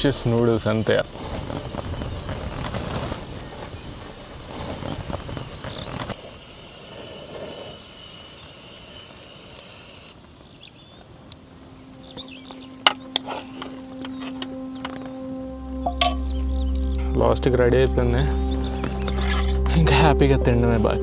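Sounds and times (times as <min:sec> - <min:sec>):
small birds chirping: 0:00.0 - 0:21.0
steady low hum: 0:11.4 - 0:21.0.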